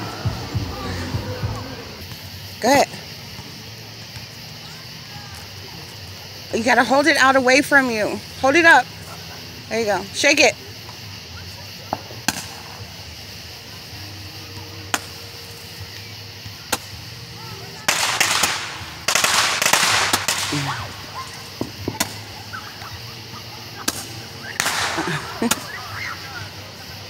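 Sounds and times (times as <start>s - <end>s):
fireworks hissing and crackling: 0.0s - 27.0s
fireworks popping and cracking: 9.8s - 14.0s, 14.9s - 27.0s.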